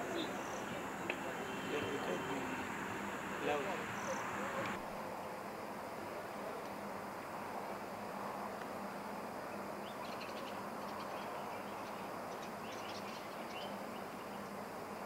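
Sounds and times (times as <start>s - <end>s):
birds chirping: 0.0s - 4.8s
background hiss: 0.0s - 15.0s.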